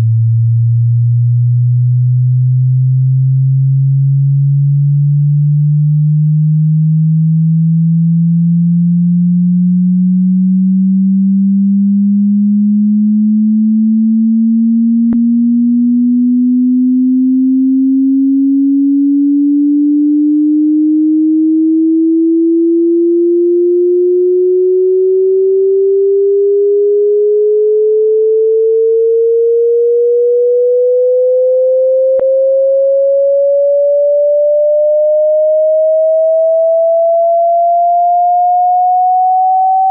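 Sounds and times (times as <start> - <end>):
rising sine-wave test tone: 0.0 - 39.9.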